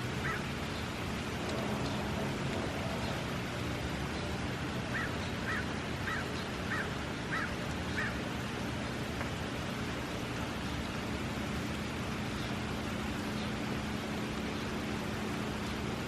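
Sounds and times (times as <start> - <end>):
steady background hiss: 0.0 - 16.0.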